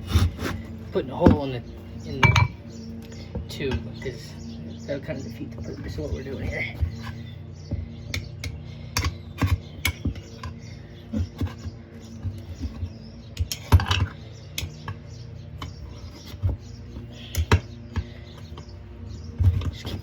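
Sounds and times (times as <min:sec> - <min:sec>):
screwdrivers prying tire on rim: 0:08.0 - 0:18.7.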